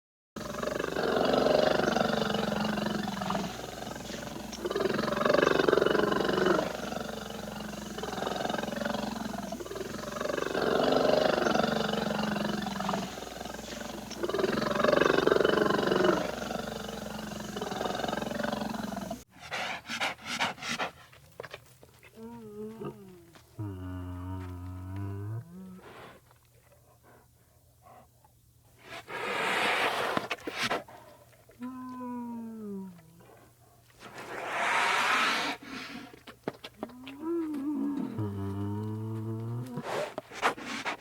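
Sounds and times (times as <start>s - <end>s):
bear growling and roaring: 0.4s - 19.2s, 36.9s - 39.9s.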